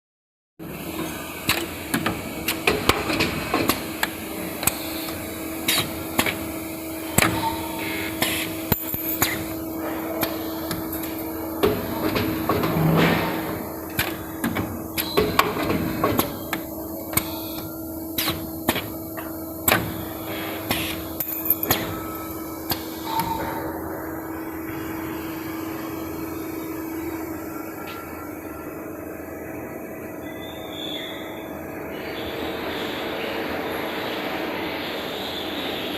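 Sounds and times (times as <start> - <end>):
machine hum and hiss: 0.6 - 35.9
machine clicks and metallic knocks: 10.2 - 22.1.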